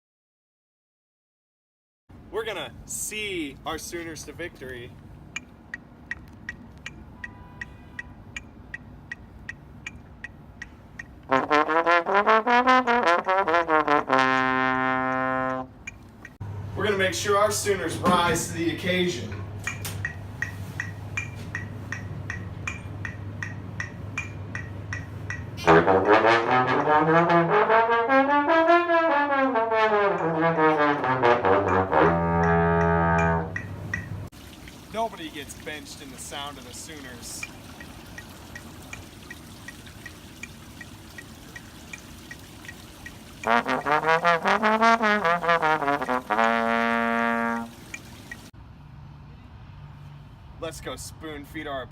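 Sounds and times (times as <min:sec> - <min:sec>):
trombone playing slurred notes: 0:11.2 - 0:15.8, 0:25.6 - 0:33.7, 0:43.4 - 0:47.9.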